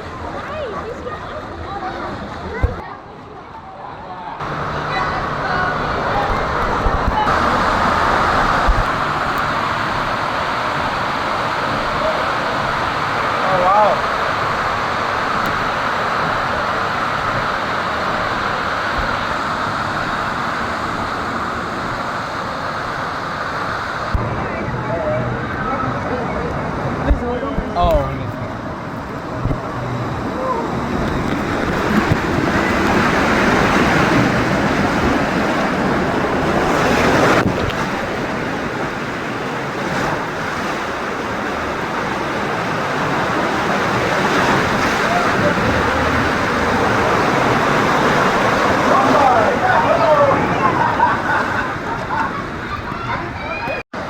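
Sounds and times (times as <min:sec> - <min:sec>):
rushing water: 0:00.0 - 0:54.0
wind on microphone: 0:04.4 - 0:13.3, 0:26.9 - 0:48.9.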